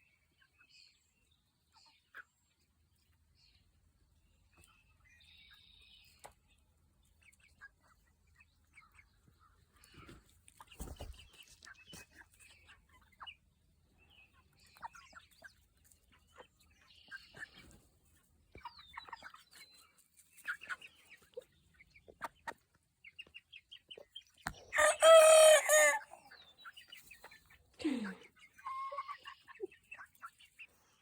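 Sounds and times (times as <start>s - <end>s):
chickens clucking: 0.3s - 31.0s
young rooster crowing: 24.7s - 26.1s.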